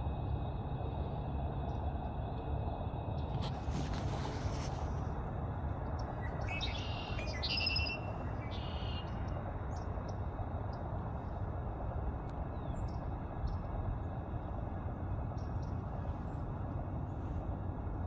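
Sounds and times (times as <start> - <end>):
steady low rumble: 0.0 - 18.0
birds calling with buzzy trills: 6.1 - 9.8.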